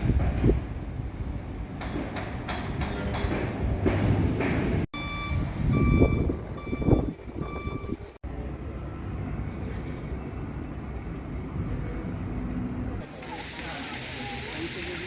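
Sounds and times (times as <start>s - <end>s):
low street noise: 0.0s - 15.0s
vehicle warning beeps: 5.0s - 8.2s.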